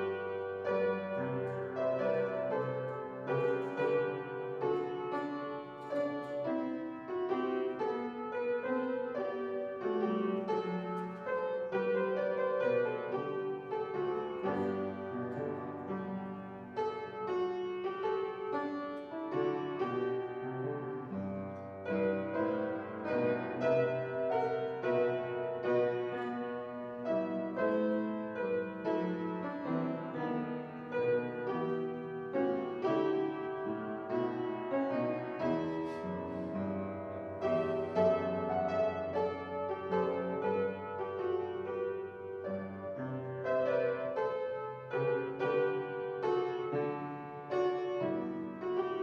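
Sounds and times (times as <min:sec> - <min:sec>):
solo piano piece: 0:00.0 - 0:49.0.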